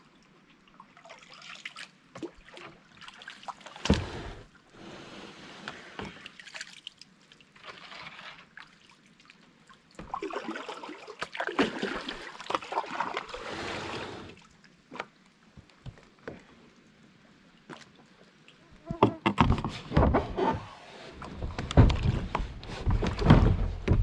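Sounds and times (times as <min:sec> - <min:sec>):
paddle water swishing: 0:10.1 - 0:14.5.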